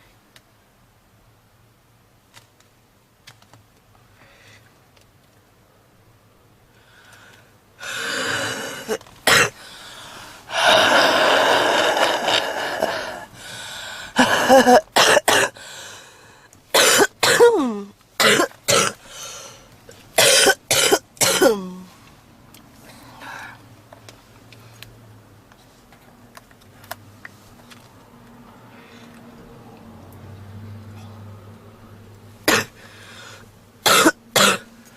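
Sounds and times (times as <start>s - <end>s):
harsh wheezy coughing: 7.8s - 9.7s, 14.1s - 15.6s, 16.7s - 19.4s, 20.1s - 21.9s, 32.4s - 34.7s.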